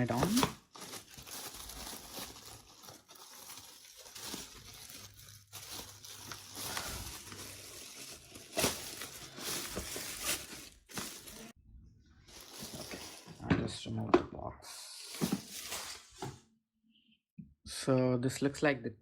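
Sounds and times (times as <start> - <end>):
packaging crinkling and tearing: 0.0 - 11.6, 12.3 - 13.4.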